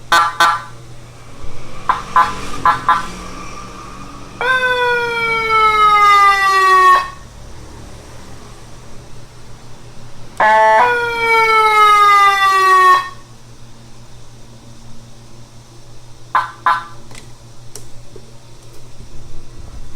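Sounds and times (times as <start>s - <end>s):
electronic siren falling tones: 0.1s - 7.3s, 10.4s - 13.2s
short steady siren blast: 0.1s - 7.3s, 10.4s - 13.3s.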